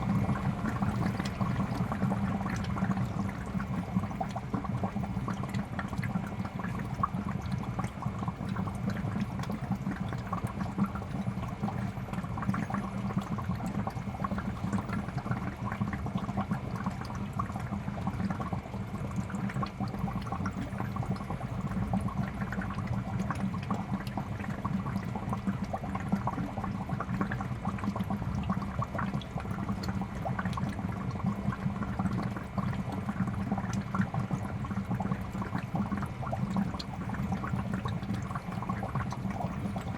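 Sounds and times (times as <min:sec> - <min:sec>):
aquarium water bubbling: 0:00.0 - 0:39.9.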